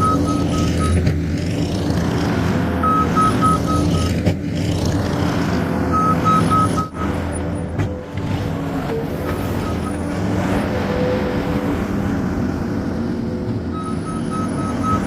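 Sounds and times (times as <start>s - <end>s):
diesel engine running: 0.0s - 15.0s
backup alarm beeping: 2.8s - 4.1s, 6.0s - 7.1s, 13.7s - 15.0s.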